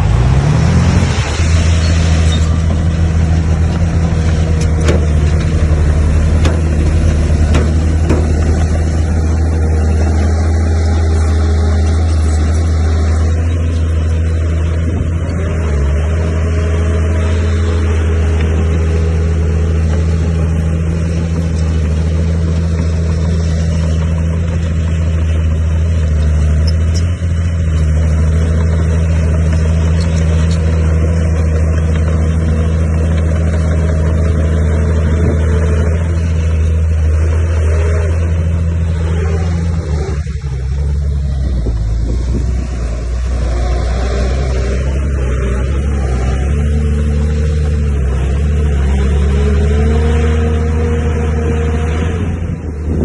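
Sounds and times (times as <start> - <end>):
heavy diesel engine running: 0.0 - 53.0
faint clatter: 2.2 - 10.4, 19.8 - 42.6.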